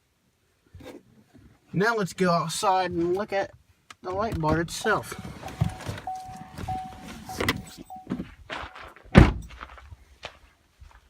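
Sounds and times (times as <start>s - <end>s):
car door chime: 5.4s - 9.5s
truck door shutting thunk: 9.2s - 9.5s.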